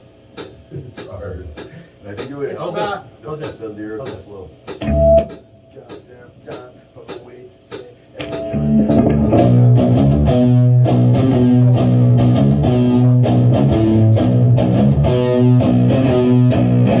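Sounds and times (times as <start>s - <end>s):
drums: 0.0s - 17.0s
cymbals struck: 0.4s - 16.7s
bass guitar riffing: 4.8s - 5.3s, 8.2s - 17.0s
electric guitar riffing: 8.2s - 17.0s.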